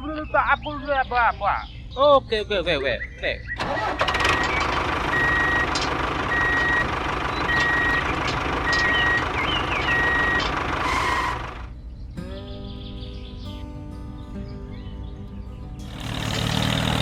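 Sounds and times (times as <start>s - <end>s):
engine rumble: 3.4s - 13.2s, 14.7s - 17.0s
truck reversing alarm beeping: 3.6s - 11.8s.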